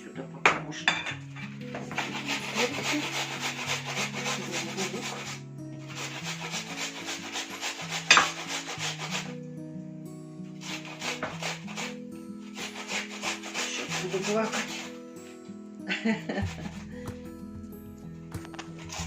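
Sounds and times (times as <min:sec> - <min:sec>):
background music held notes: 0:00.0 - 0:19.0
onion grating on grater: 0:01.9 - 0:09.4, 0:10.6 - 0:15.0, 0:16.4 - 0:16.8, 0:18.6 - 0:19.0.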